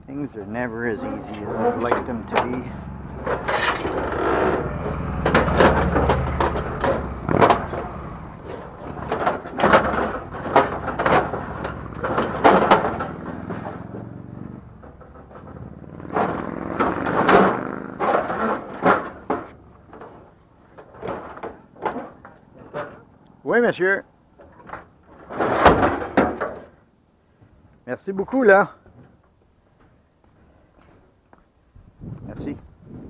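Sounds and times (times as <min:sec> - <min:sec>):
scrap metal knocks and clanks: 0:00.8 - 0:23.1, 0:24.4 - 0:26.8.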